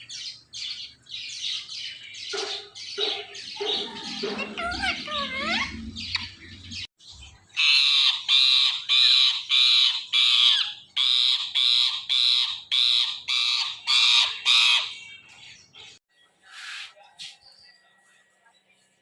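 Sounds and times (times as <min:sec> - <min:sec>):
parrot screeching squawks: 0:03.3 - 0:06.7, 0:07.6 - 0:15.0.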